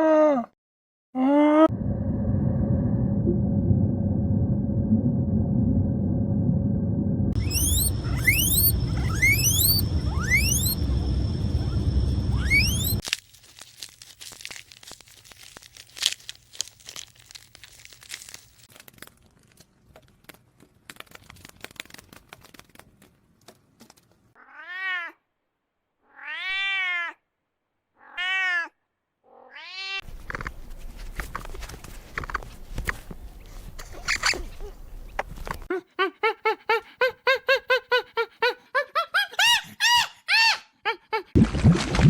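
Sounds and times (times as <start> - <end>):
animal meowing: 7.4 - 10.8, 12.3 - 13.0.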